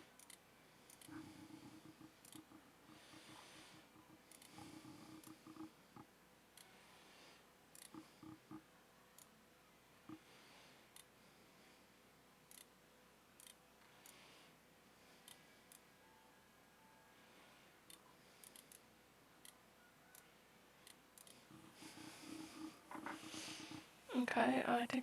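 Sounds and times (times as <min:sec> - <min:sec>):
computer mouse clicks: 0:07.8 - 0:08.6.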